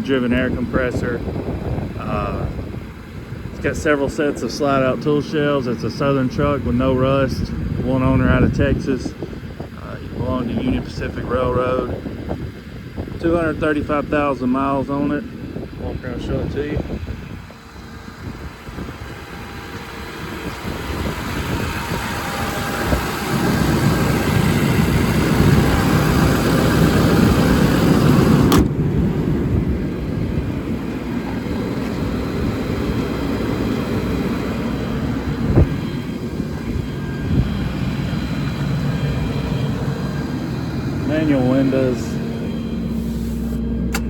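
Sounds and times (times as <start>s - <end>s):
diesel truck engine running: 0.0s - 44.0s
sharp click: 28.5s - 28.8s.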